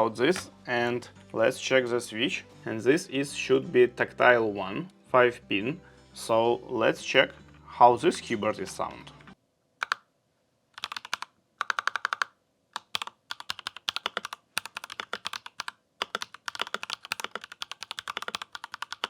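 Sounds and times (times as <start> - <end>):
typing on mechanical keyboard: 9.8 - 10.0, 10.8 - 19.0.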